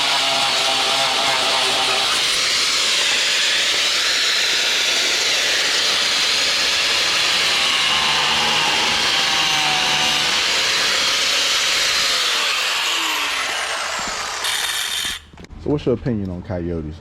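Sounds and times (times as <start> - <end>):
power tool running with hiss: 0.0 - 15.3.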